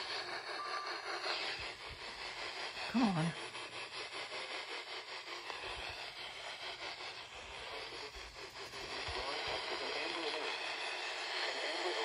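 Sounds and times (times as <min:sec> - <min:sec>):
radio static hiss: 0:00.0 - 0:02.1, 0:08.8 - 0:12.0
faint radio crackle: 0:09.1 - 0:10.6.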